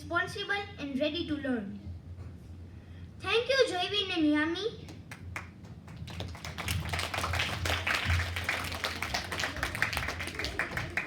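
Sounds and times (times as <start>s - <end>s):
audience clapping: 5.1s - 11.0s.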